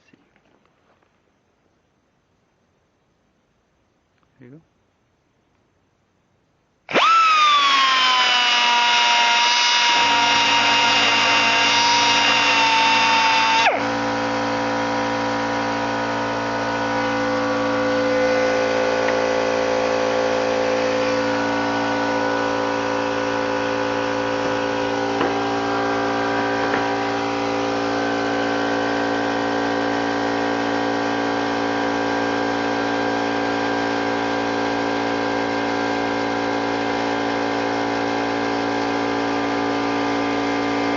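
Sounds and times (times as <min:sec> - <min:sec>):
air die grinder whining: 0:06.9 - 0:34.6
air compressor motor humming: 0:06.9 - 0:40.9.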